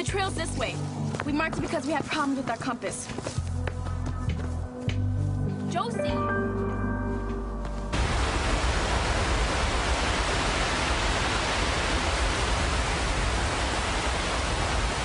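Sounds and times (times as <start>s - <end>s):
river water rushing: 8.0s - 15.0s.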